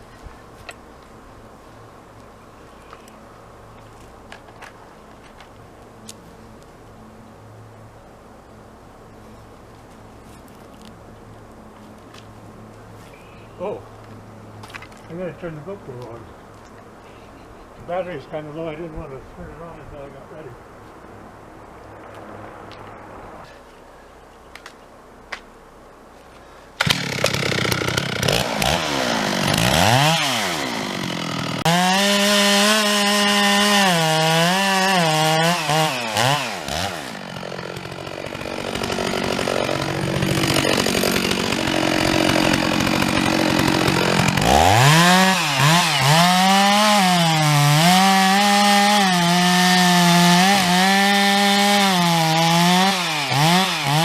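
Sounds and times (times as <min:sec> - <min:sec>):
chainsaw cutting tree: 0:26.8 - 0:54.0.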